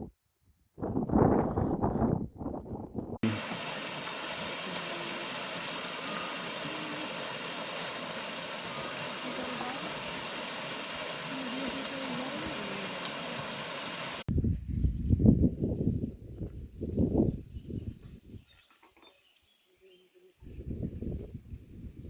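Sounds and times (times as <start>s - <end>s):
water rushing: 3.2s - 14.3s.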